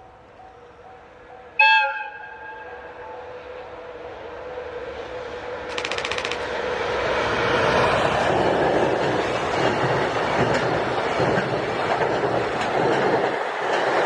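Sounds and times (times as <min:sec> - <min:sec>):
train wheels rumbling on rail: 0:03.4 - 0:14.0
wheels clicking over rail joints: 0:08.9 - 0:14.0.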